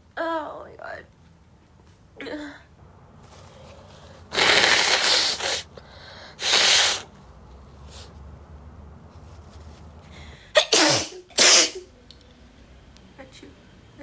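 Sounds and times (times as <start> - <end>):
woman sneezing: 4.3 - 5.7, 6.4 - 7.1, 10.6 - 11.9.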